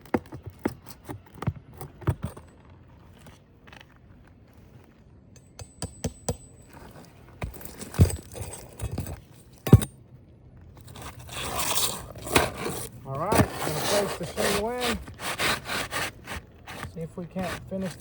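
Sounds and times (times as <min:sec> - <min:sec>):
roofing shingle scraping: 0:10.7 - 0:18.0.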